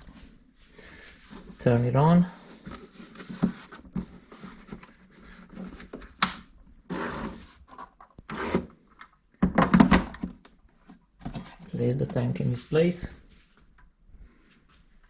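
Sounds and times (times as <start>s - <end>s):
plastic clatter: 9.0s - 12.2s
plastic water tank knocks and rattles: 9.4s - 10.5s.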